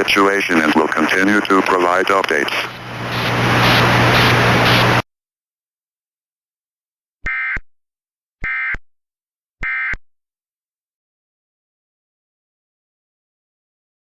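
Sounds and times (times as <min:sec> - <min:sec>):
hissing noise: 0:02.2 - 0:05.0
low hum: 0:02.4 - 0:05.0
harsh digital data bursts: 0:02.6 - 0:05.0.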